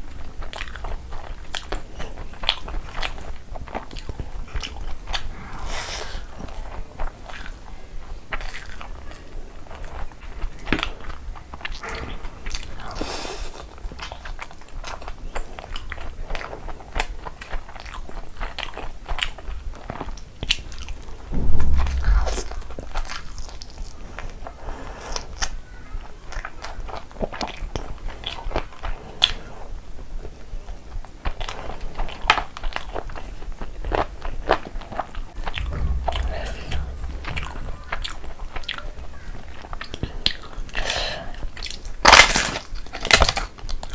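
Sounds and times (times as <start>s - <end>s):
low thump: 20.7s - 23.2s, 35.5s - 38.9s.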